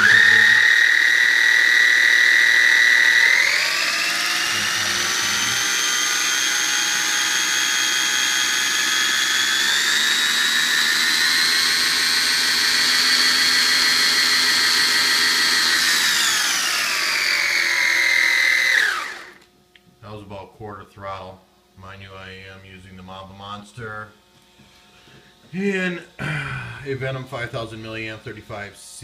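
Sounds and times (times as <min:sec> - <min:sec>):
rc car motor whine: 0:00.0 - 0:19.4.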